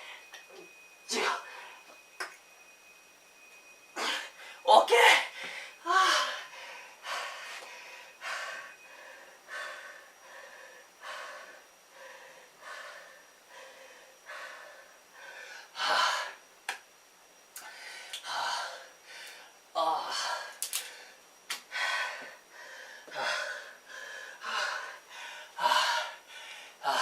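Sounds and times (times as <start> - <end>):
man breathing hard: 5.3 - 16.4, 17.6 - 27.0.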